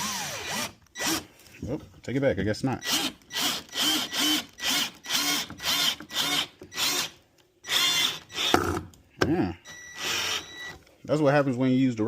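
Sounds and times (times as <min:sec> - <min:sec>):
power drill whining in pulses: 0:00.0 - 0:01.3, 0:02.8 - 0:08.8, 0:09.7 - 0:10.8.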